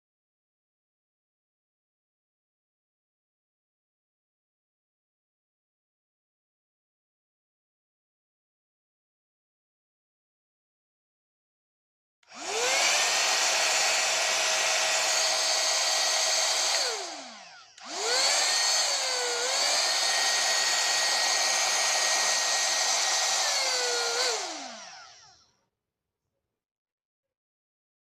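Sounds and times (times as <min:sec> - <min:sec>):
hair dryer motor whining: 0:12.2 - 0:25.6.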